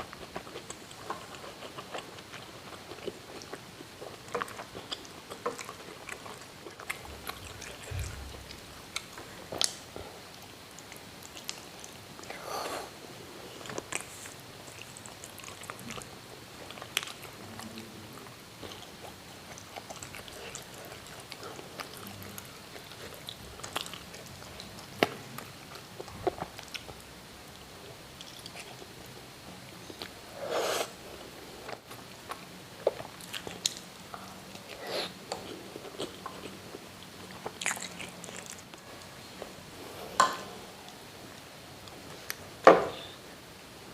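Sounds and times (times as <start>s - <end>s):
close chewing and biting: 18.6s - 27.0s, 34.5s - 38.8s.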